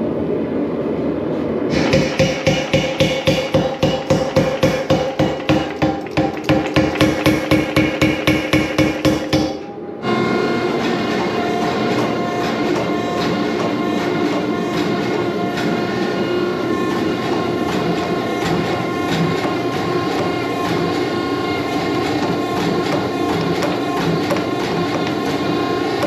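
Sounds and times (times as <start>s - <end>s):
power hammer striking hot steel: 1.7s - 9.7s, 10.8s - 26.0s
machine drone with held tones: 8.0s - 26.0s.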